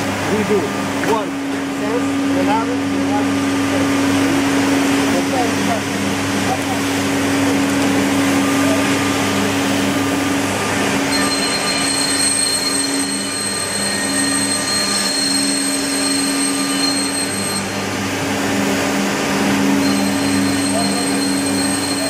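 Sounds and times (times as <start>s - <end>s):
high-pitched machine whine: 0.0s - 22.0s
woodworking machinery humming: 0.0s - 22.0s.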